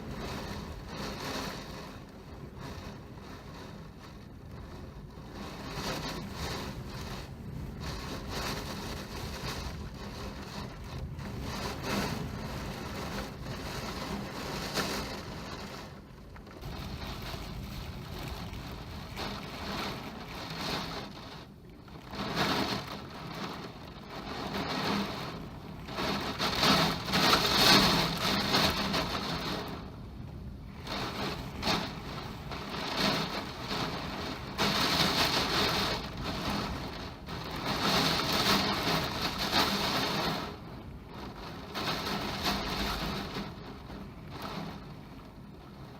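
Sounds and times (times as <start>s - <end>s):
heavy rain pouring: 0.0s - 45.9s
wind gusting: 16.5s - 21.4s.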